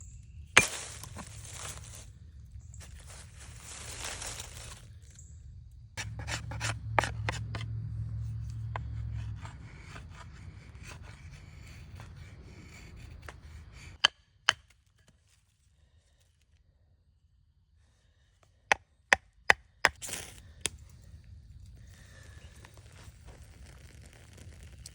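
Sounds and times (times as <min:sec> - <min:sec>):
wood scraping and rubbing: 0:06.0 - 0:07.7.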